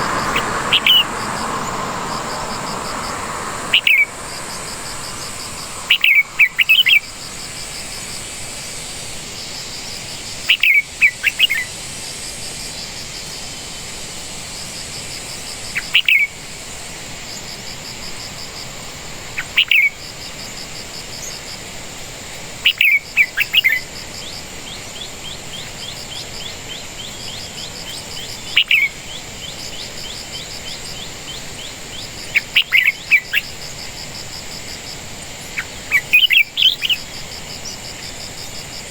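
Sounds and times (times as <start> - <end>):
insects droning and trilling: 0.0 - 38.9
bird giving sharp calls: 3.6 - 8.2.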